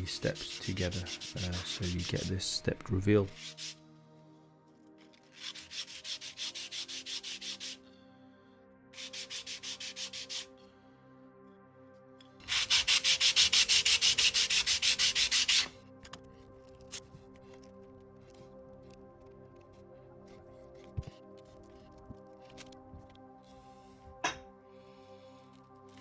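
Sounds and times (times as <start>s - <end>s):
sanding foam: 0.0s - 2.3s, 3.3s - 3.8s, 5.3s - 7.8s, 9.0s - 10.5s, 12.4s - 15.7s.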